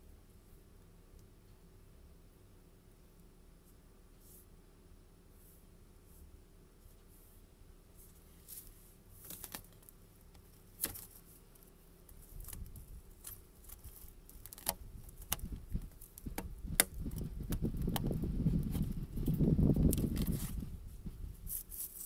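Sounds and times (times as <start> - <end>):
plastic rubbing and scraping: 12.0 - 22.0.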